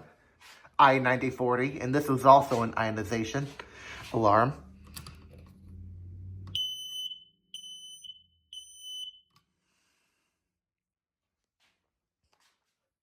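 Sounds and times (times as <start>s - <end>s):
smoke alarm beeping: 6.5s - 9.4s.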